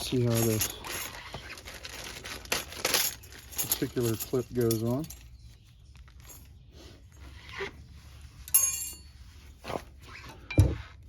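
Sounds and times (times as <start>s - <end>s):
soft metal knocks and scrapes: 7.2s - 11.0s
ringing metallic clink: 8.5s - 9.1s.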